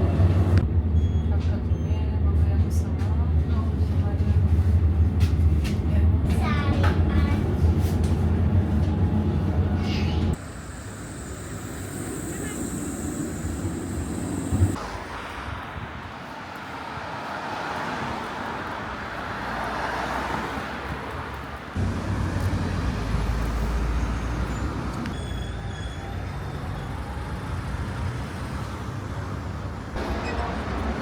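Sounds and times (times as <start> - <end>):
deep engine rumble: 1.5 - 14.8
vehicles going by: 4.4 - 25.2, 26.0 - 31.0.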